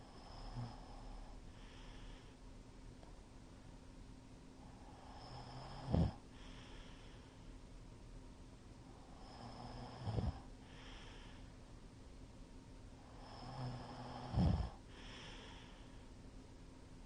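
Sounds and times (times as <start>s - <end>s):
man snoring heavily: 0.1s - 2.2s, 4.9s - 6.9s, 9.0s - 11.3s, 13.1s - 15.8s.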